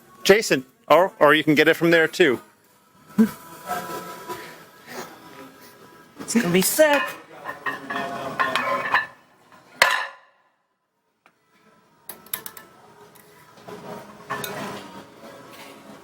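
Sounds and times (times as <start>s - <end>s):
metal gym weights clanking: 6.9s - 9.2s.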